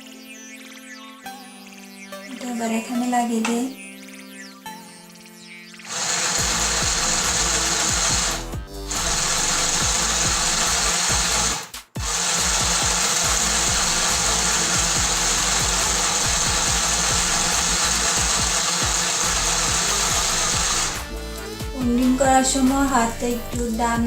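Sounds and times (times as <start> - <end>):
sewing machine motor running: 5.9 - 21.2.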